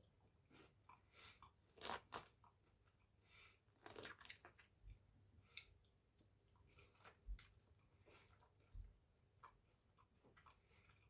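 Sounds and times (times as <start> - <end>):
person chewing crunchy food: 9.3 - 11.0.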